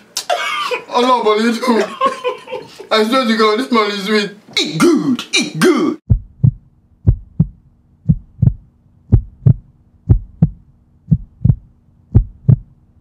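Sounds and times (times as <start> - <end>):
heartbeat thumps: 6.1 - 12.8.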